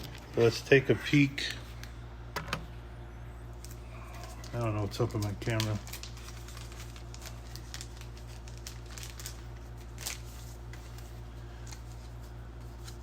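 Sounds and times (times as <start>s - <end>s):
steady low hum: 0.0s - 13.0s
paper and cardboard rustling: 4.1s - 13.0s.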